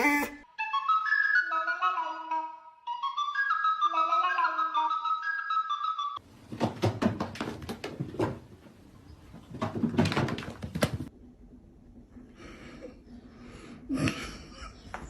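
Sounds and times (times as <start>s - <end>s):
flute-like melody: 0.0s - 6.2s
knocks and thumps in a room: 6.2s - 11.2s.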